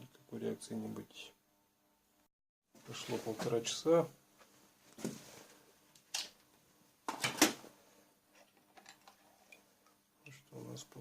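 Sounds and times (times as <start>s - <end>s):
handling knocks and rustles: 4.4s - 6.2s.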